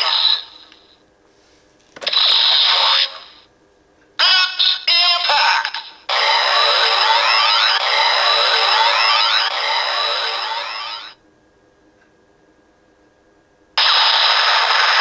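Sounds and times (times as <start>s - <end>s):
electronic toy sound effects: 6.1s - 11.2s
looping electronic standby tune: 6.1s - 11.2s.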